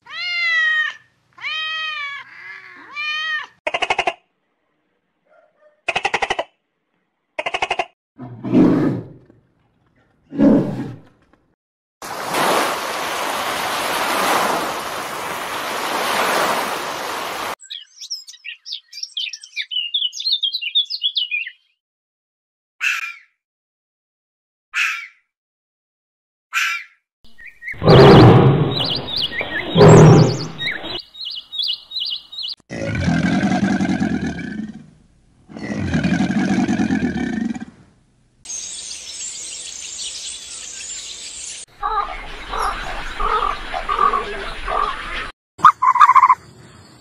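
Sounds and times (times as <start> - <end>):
arching whining animal calls: 27.8 - 31.0
low deep animal calls: 27.8 - 31.0.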